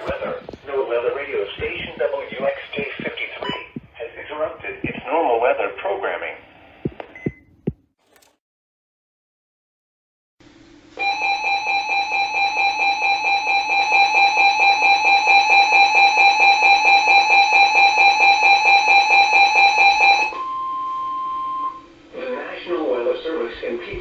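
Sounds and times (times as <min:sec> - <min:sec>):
pulsing electronic alert alarm: 0:11.0 - 0:21.9
steady warning alarm tone: 0:11.0 - 0:22.0.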